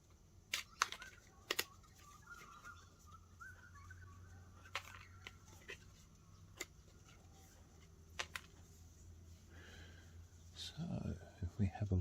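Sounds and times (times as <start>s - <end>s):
cardboard pieces clicking and tapping: 0.5s - 2.5s, 8.1s - 8.6s.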